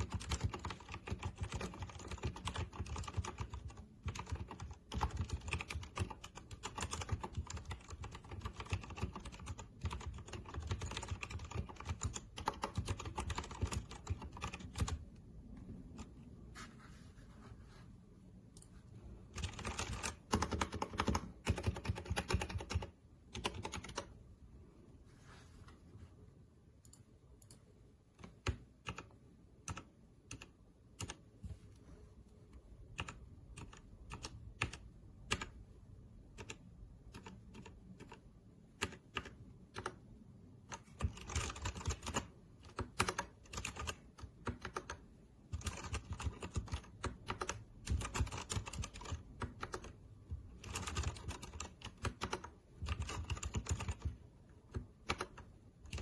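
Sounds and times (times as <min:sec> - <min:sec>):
mechanical keyboard typing: 0:00.0 - 0:15.2, 0:19.3 - 0:24.2, 0:28.2 - 0:31.3, 0:33.0 - 0:35.6, 0:36.4 - 0:38.2, 0:38.8 - 0:40.0, 0:40.7 - 0:56.0.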